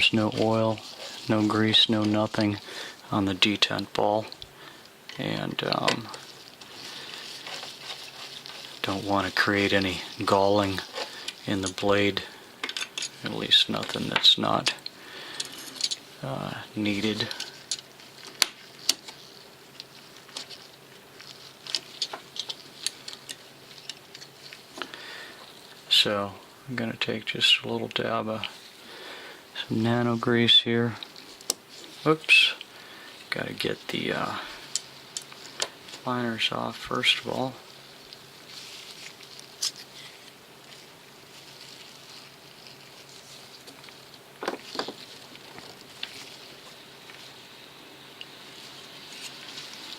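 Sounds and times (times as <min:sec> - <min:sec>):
faint steady hiss: 0:00.0 - 0:49.9
small metal parts clicking: 0:12.6 - 0:13.4, 0:14.8 - 0:16.1, 0:17.1 - 0:20.6, 0:21.2 - 0:24.8.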